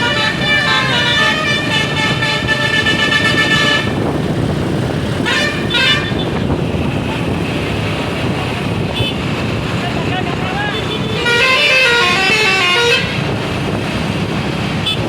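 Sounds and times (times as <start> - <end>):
musical air horn: 0.0 - 4.0, 5.2 - 6.4, 11.0 - 13.3
engine and road noise: 0.0 - 15.0.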